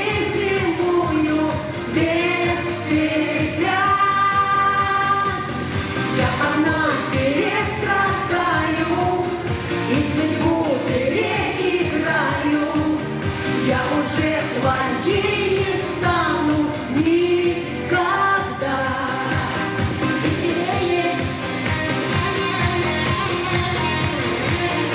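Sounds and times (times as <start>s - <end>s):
instrumental accompaniment: 19.3s - 24.9s.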